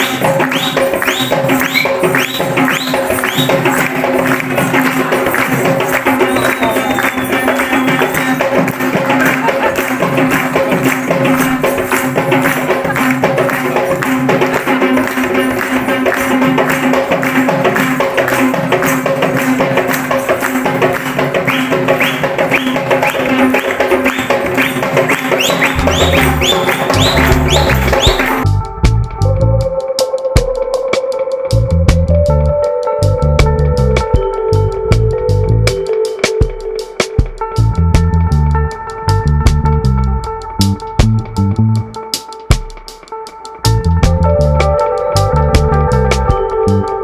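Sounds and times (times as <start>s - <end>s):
jingling hand percussion: 0.0s - 47.0s
deep bass beat: 25.4s - 29.8s, 31.5s - 35.9s, 37.2s - 42.0s, 43.6s - 47.0s.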